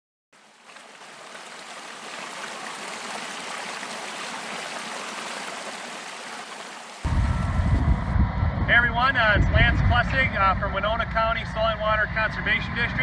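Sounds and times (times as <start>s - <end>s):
creek water flowing: 0.4s - 8.6s.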